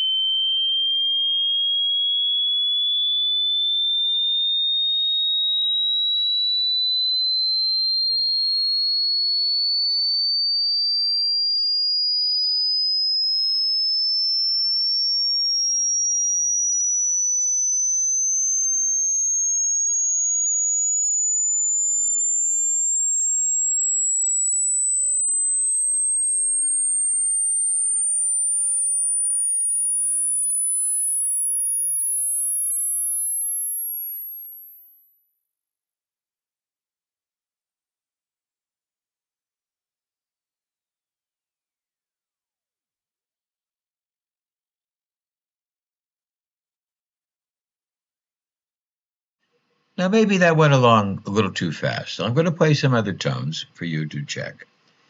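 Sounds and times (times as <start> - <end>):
sine tone rising in steps: 0.0 - 42.7.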